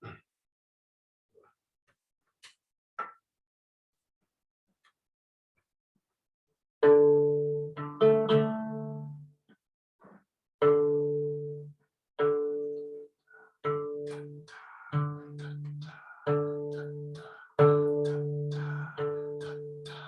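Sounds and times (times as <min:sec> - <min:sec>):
plucked string chords: 0:06.8 - 0:09.3, 0:10.6 - 0:20.0.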